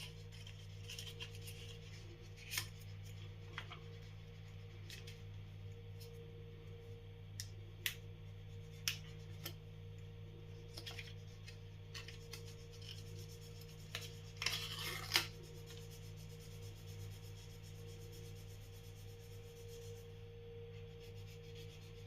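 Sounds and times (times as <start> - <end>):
steady low hum: 0.0 - 22.0
shaving brush lathering in bowl: 10.7 - 20.2, 20.8 - 22.0.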